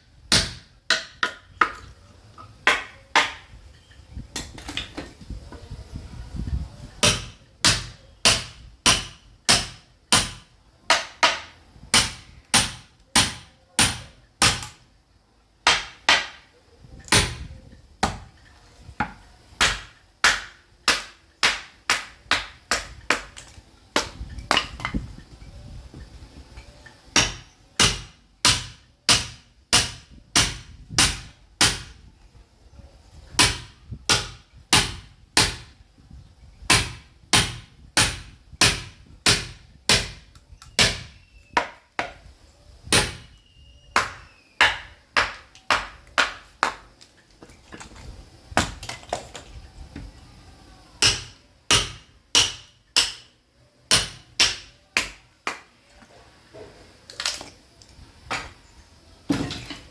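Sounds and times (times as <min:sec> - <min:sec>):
sledgehammer striking steel chisel: 0:07.0 - 0:14.8, 0:27.2 - 0:31.9, 0:42.9 - 0:43.4, 0:51.0 - 0:53.3, 0:53.9 - 0:55.2.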